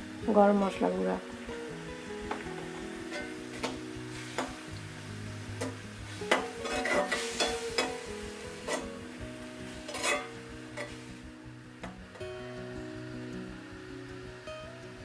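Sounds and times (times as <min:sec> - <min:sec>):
background music: 0:00.0 - 0:15.0
light sizzling: 0:00.0 - 0:15.0
spatula scraping metal pan: 0:03.1 - 0:03.8, 0:05.6 - 0:09.0, 0:09.8 - 0:11.0.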